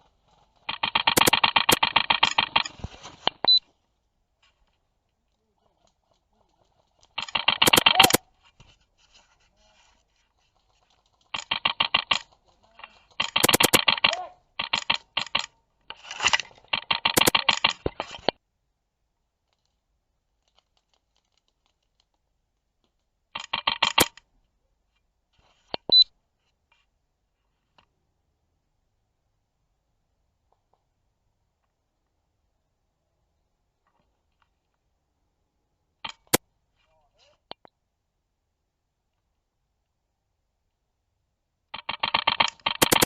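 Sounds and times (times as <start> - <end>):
airsoft rifle firing: 0.7 - 2.7, 7.2 - 8.2, 13.2 - 15.5, 16.7 - 18.1, 41.8 - 43.0.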